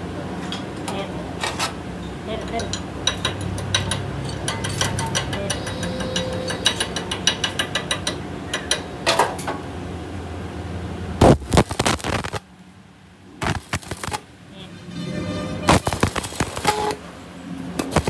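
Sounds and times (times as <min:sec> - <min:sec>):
machine motor humming: 0:13.4 - 0:17.1, 0:17.8 - 0:18.0.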